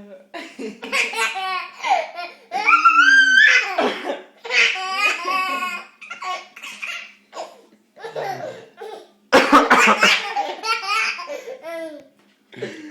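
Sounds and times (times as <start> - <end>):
baby laughing: 0.8 - 12.1
person coughing loudly: 3.7 - 4.3, 7.4 - 10.5.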